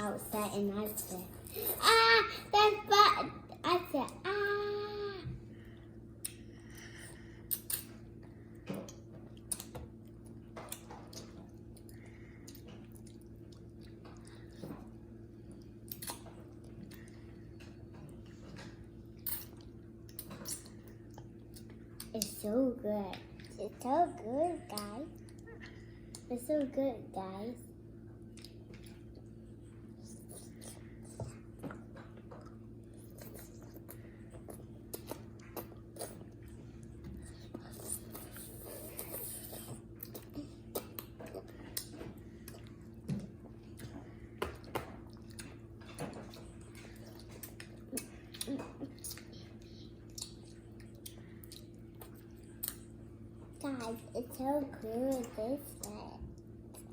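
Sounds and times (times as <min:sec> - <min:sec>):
steady low hum: 0:00.0 - 0:56.9
spaghetti being chewed: 0:05.9 - 0:22.4, 0:28.0 - 0:54.1.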